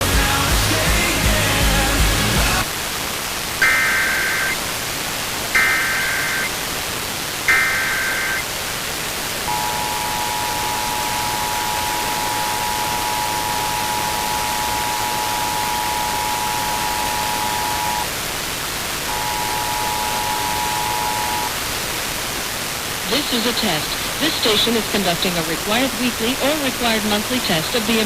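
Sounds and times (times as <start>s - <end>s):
static hiss: 0.0s - 28.0s
two-tone attention signal: 3.6s - 4.6s, 5.6s - 6.5s, 7.5s - 8.4s, 9.5s - 18.1s, 19.1s - 21.5s
warbling data chirp: 3.6s - 4.7s, 5.6s - 6.6s, 7.5s - 8.5s, 9.5s - 18.1s, 19.1s - 21.5s.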